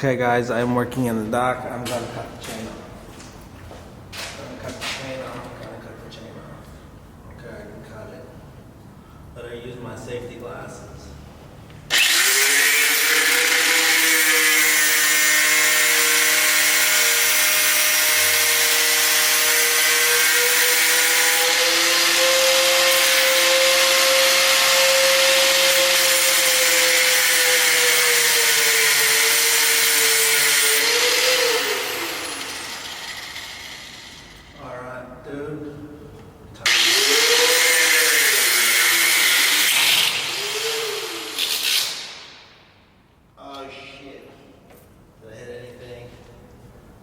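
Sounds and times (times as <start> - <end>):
cut-off tool grinding chain: 11.9 - 34.4.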